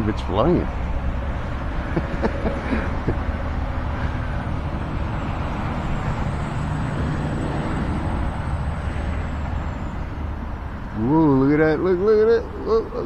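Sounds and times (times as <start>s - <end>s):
wind buffeting microphone: 0.0s - 13.0s.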